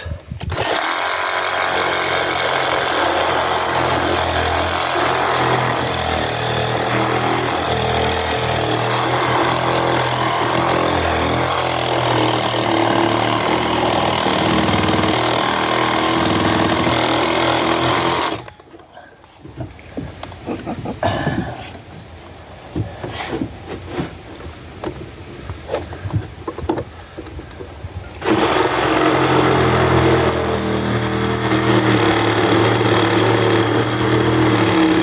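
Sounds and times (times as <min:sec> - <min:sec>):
reciprocating saw cutting wood: 0:00.4 - 0:18.6, 0:28.1 - 0:35.0.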